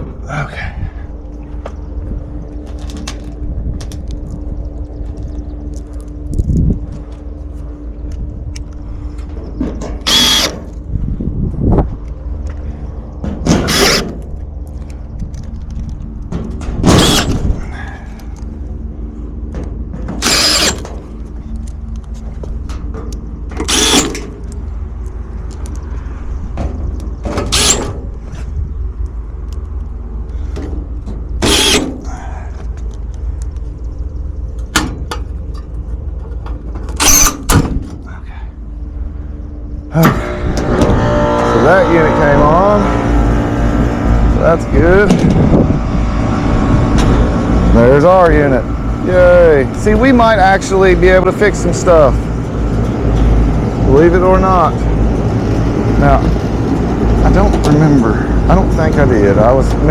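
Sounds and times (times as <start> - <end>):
machinery humming: 0.0 - 59.9.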